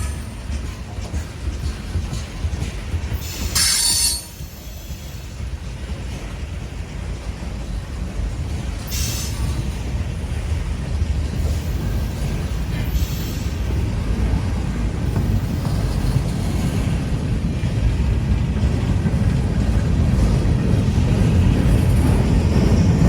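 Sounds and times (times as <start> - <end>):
freight train rumbling: 0.0 - 23.0
train wheels squealing: 3.0 - 5.5, 8.8 - 9.8, 11.4 - 13.8.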